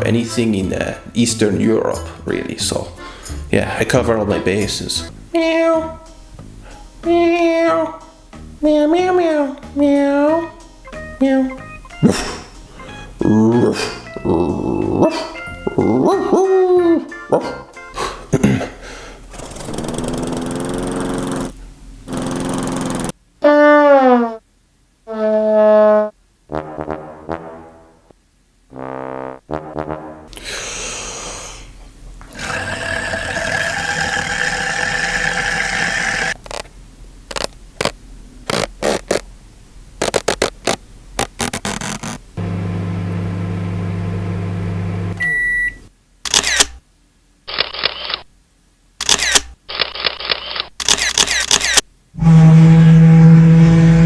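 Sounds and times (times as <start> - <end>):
man imitating sound effects: 3.9 - 5.1, 12.0 - 12.6, 13.2 - 18.8, 32.3 - 36.4
man humming low: 12.0 - 12.5, 13.2 - 16.4
man making hissing noises: 12.0 - 16.4, 17.4 - 19.2, 30.3 - 31.8, 32.4 - 36.4
man imitating high beep: 13.2 - 16.2.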